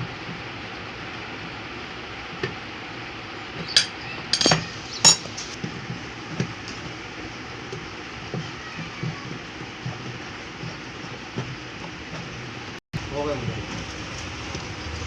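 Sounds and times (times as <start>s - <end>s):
sharp metallic clinks: 3.7s - 5.6s.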